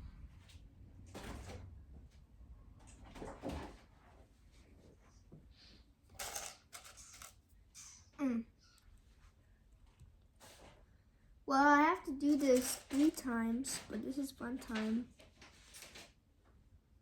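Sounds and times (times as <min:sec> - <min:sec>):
plastic pieces clicking together: 0:06.2 - 0:07.4.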